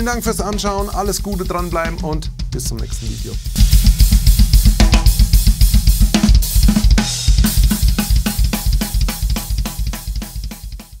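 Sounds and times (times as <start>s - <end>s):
drum kit groove: 0.0s - 11.0s
cymbal wash: 2.9s - 10.8s.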